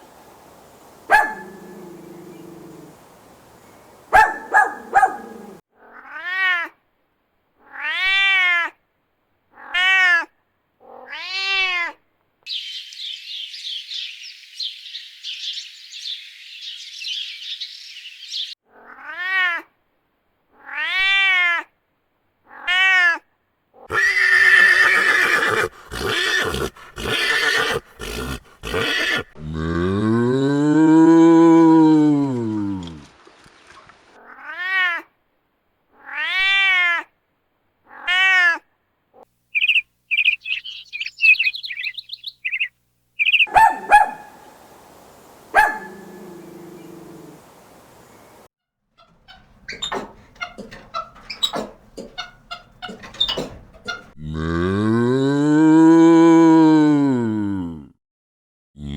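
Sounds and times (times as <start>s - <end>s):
rough cat cries: 4.2s - 6.8s, 7.6s - 8.8s, 9.6s - 12.0s, 18.7s - 19.7s, 20.6s - 21.7s, 22.5s - 29.3s, 34.2s - 35.1s, 36.0s - 37.1s, 37.9s - 38.7s
cat meowing: 18.8s - 19.6s, 20.6s - 21.6s, 22.5s - 23.2s, 34.2s - 35.0s, 36.0s - 37.0s, 37.9s - 38.6s
cat chirping: 49.0s - 54.2s.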